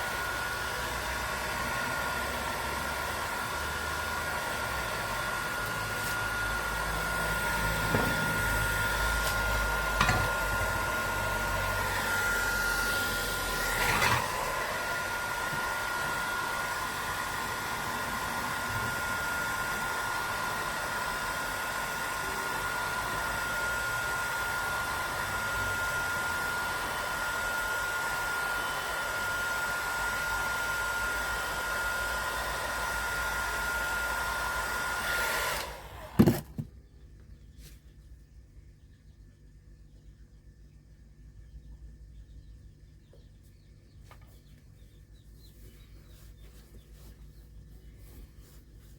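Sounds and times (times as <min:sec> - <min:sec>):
small electric motor whining: 0:00.0 - 0:36.7
thump: 0:07.8 - 0:08.3, 0:36.2 - 0:36.7.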